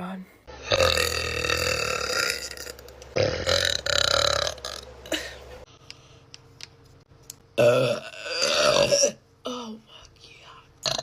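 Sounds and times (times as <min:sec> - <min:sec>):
woman burping: 0:00.7 - 0:05.4, 0:07.6 - 0:09.2.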